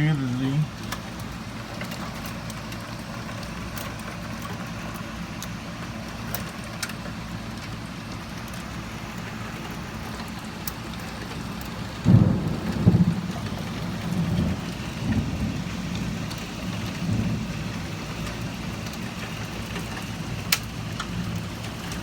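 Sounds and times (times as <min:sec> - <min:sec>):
heavy rain: 0:00.0 - 0:22.0
loud low thunder rumble: 0:11.8 - 0:18.8.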